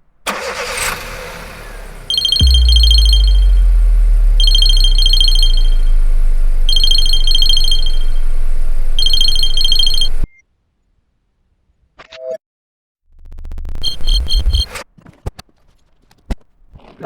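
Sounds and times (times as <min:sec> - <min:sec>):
loud low drone: 0:01.6 - 0:10.2
electronic alarm warbling: 0:02.1 - 0:10.3.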